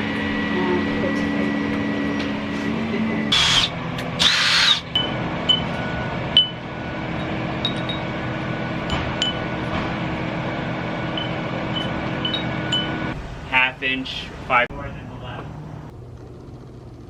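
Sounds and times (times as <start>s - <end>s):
steady low hum: 0.0s - 17.0s
power drill running: 3.3s - 5.8s.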